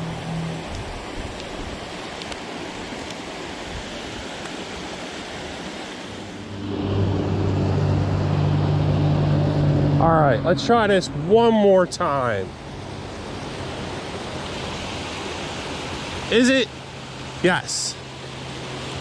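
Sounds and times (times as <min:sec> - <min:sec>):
low hum: 0:00.0 - 0:01.3, 0:06.3 - 0:14.4.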